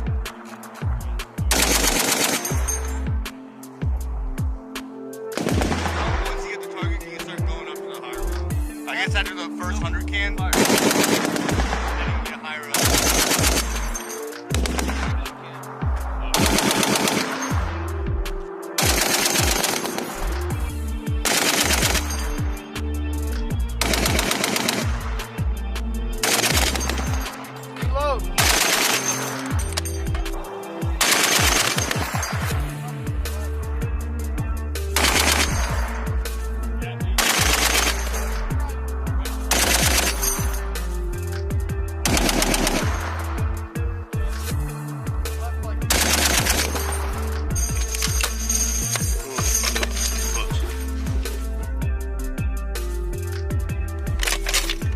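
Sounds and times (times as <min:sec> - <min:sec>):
music with bass beat: 0:00.0 - 0:04.9, 0:08.2 - 0:28.9, 0:29.5 - 0:54.9
machine gun bursts: 0:01.5 - 0:02.8, 0:10.6 - 0:11.8, 0:12.8 - 0:15.1, 0:16.4 - 0:17.6, 0:18.8 - 0:20.3, 0:21.2 - 0:22.4, 0:23.8 - 0:25.0, 0:26.2 - 0:27.3, 0:28.4 - 0:30.0, 0:31.0 - 0:32.5, 0:35.0 - 0:35.8, 0:37.2 - 0:38.2, 0:39.5 - 0:40.5, 0:42.1 - 0:43.1, 0:45.9 - 0:50.5.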